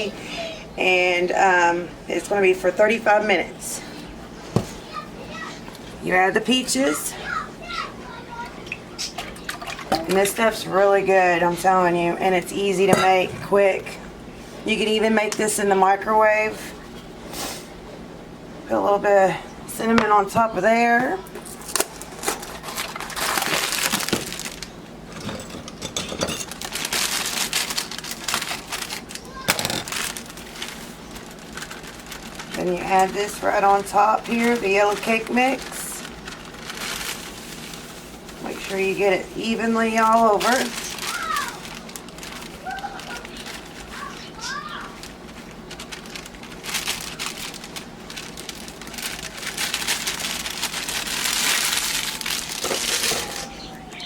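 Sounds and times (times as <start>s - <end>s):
food packaging crinkling: 21.2s - 54.0s
dry cake mix being shaken out: 26.4s - 53.6s.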